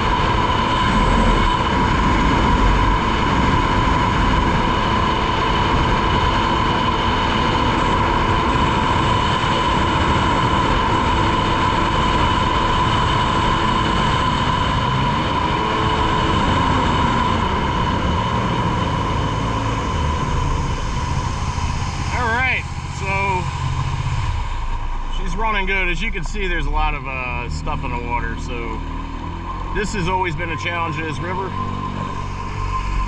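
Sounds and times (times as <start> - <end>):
personal watercraft engine whine: 0.0 - 33.0.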